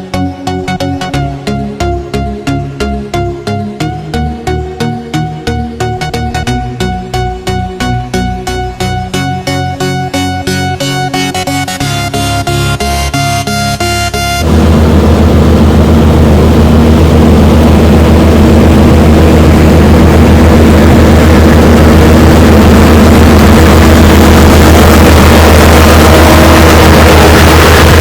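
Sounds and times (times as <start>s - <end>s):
diesel engine droning under load: 14.4s - 28.0s.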